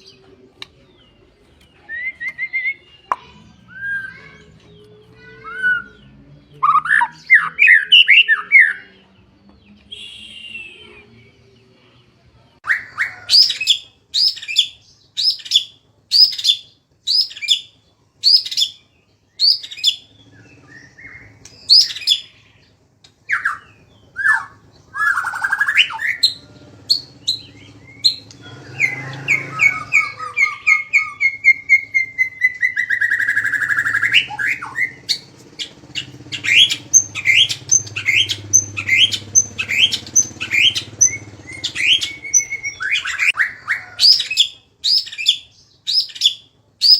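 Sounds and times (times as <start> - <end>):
songbird singing: 0.0 - 46.9.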